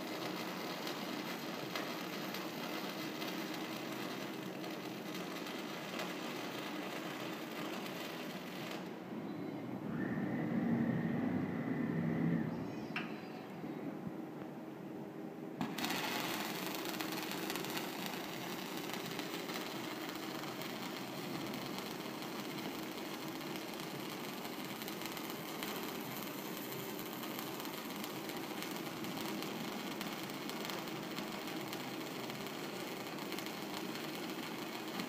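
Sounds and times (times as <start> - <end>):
welding arc hissing: 0.0 - 8.9, 15.6 - 35.0
low machine hum: 0.0 - 22.0.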